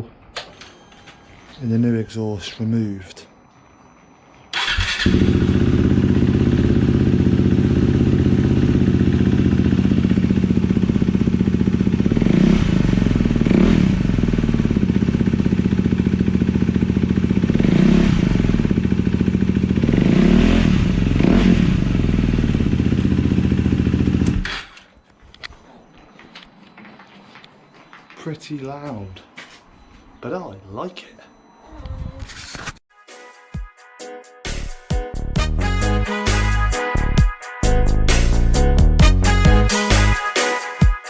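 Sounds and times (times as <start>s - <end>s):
motorcycle engine idling and revving: 4.6s - 24.8s.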